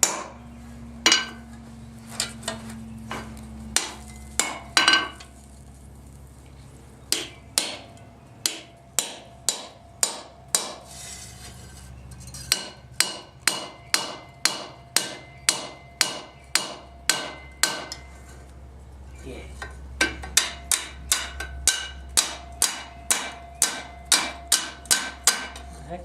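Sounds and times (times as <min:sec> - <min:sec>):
hammer striking steel on anvil: 0:00.0 - 0:00.4, 0:01.0 - 0:01.4, 0:03.8 - 0:05.2, 0:07.1 - 0:10.9, 0:12.4 - 0:18.1, 0:19.6 - 0:25.9.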